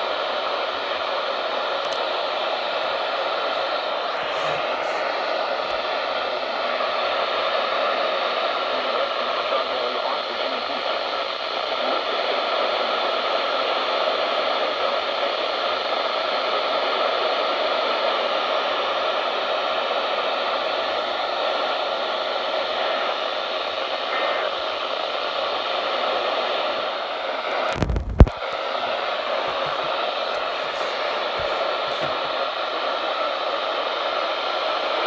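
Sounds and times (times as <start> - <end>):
radio static hiss: 0.0 - 16.0, 22.0 - 35.0
sharp crackle with low thump: 27.7 - 28.4.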